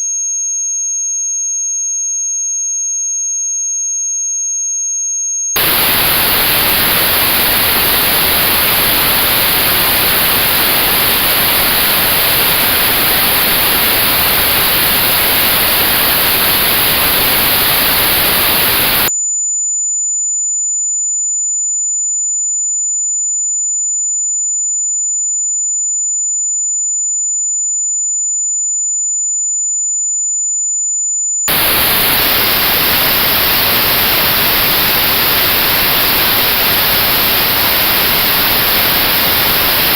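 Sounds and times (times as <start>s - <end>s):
high-pitched pure tone: 5.6s - 19.1s, 31.5s - 39.9s
notched white noise: 5.6s - 19.1s, 31.5s - 39.9s.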